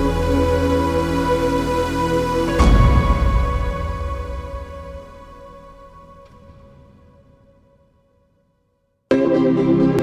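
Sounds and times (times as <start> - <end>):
sustained chord of held tones: 0.0 - 6.5.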